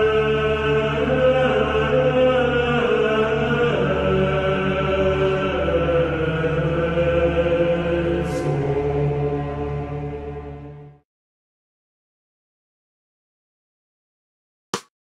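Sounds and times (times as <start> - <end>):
chant-like drone: 0.0 - 11.0.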